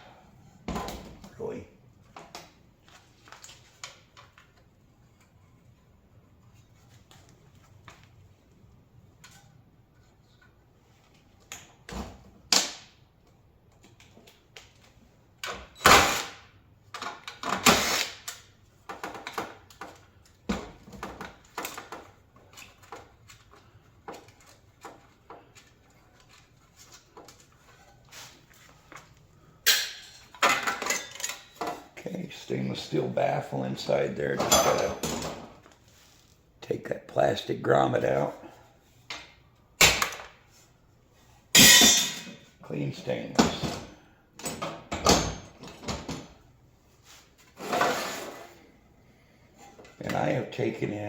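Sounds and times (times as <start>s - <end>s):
metal parts and tools clanking: 29.6s - 31.9s, 34.4s - 35.5s, 41.6s - 42.4s.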